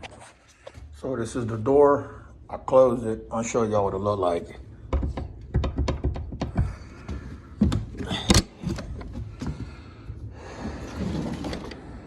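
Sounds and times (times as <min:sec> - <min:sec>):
knocks and clunks of door: 0:04.9 - 0:06.9
door scraping: 0:10.4 - 0:12.0.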